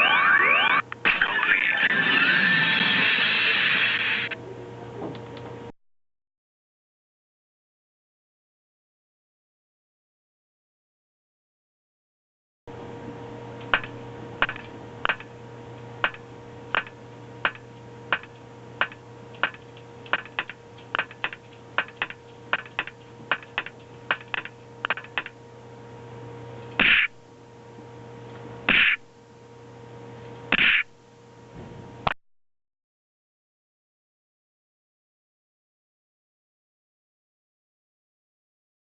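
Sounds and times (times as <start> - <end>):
steady electrical hum: 0.0 - 5.7, 12.7 - 32.2.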